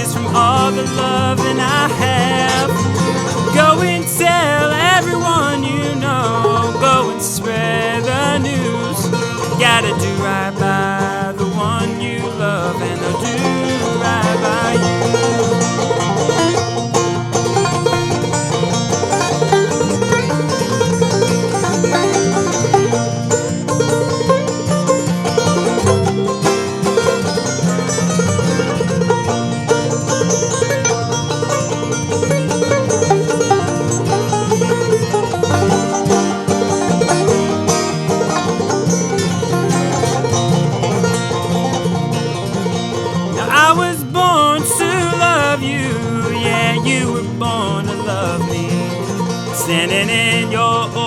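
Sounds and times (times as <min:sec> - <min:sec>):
person singing: 0:00.0 - 0:15.5, 0:43.3 - 0:51.0
banjo plucked notes: 0:00.0 - 0:51.0.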